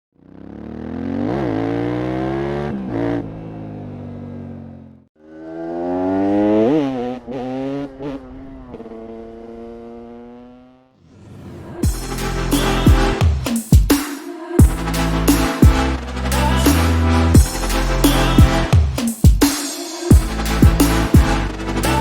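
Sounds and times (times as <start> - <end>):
motorcycle engine revving: 0.1 - 12.0.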